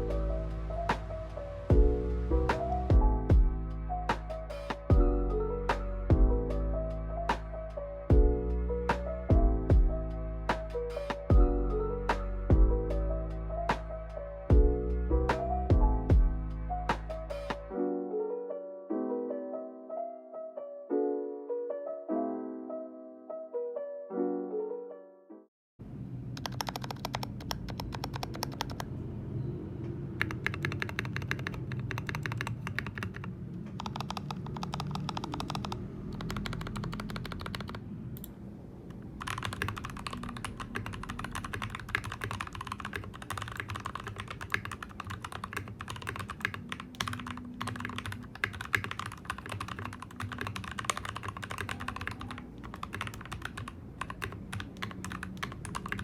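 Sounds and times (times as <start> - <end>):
piano music: 0.0 - 25.5, 39.2 - 56.0
mechanical keyboard typing: 26.4 - 28.9, 30.2 - 38.3, 38.9 - 56.0.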